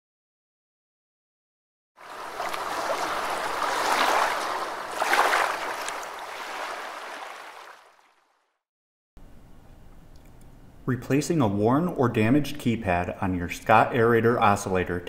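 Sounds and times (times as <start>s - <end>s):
rushing splashing water: 2.0s - 8.5s.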